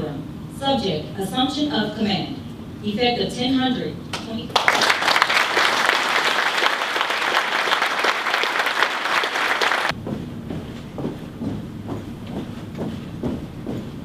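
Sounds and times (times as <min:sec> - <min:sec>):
audience applauding: 0:04.5 - 0:09.9.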